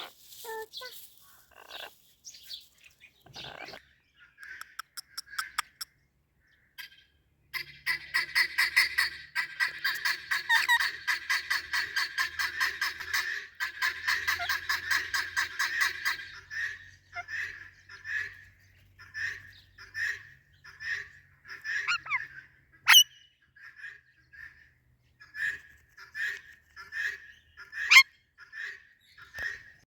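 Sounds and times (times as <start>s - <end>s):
parrot squawking: 21.6s - 22.3s, 22.9s - 23.1s, 27.8s - 28.1s.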